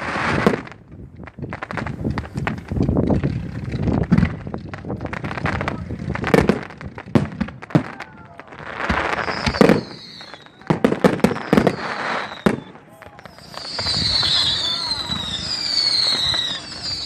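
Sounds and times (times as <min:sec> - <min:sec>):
fireworks bangs and crackles: 0:00.0 - 0:17.0
firework whistle falling: 0:09.0 - 0:17.0.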